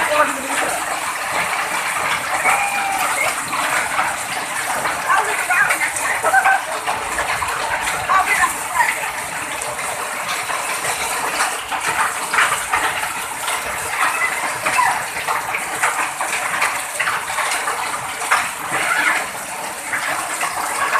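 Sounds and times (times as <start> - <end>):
running water: 0.0 - 20.9.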